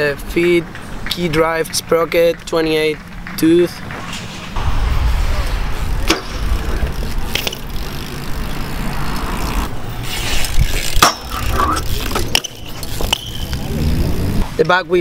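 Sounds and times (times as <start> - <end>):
bike tyres rolling: 6.4 - 14.6
bike knocks and clatters: 7.4 - 14.3.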